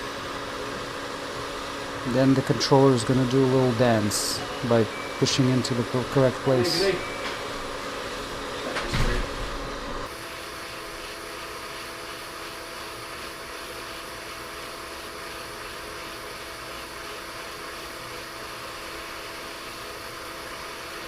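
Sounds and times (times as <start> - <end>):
hot air blower hissing: 0.0 - 21.0.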